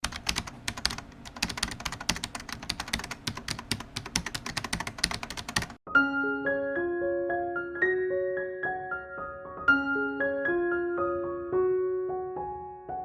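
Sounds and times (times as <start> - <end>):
keyboard typing clicks: 0.0 - 5.8
gentle piano music: 4.6 - 13.0.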